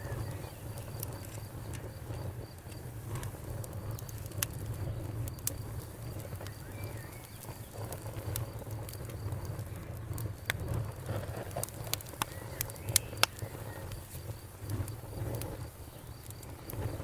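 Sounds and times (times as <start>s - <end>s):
crickets chirping: 0.0s - 4.1s, 4.8s - 11.1s
campfire crackling and popping: 0.0s - 17.0s.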